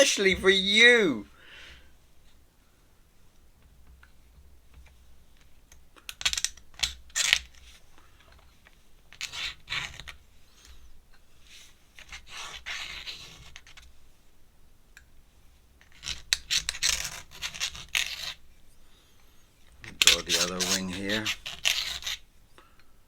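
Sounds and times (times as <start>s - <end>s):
pen scratching on paper: 12.0s - 13.6s, 20.0s - 22.2s.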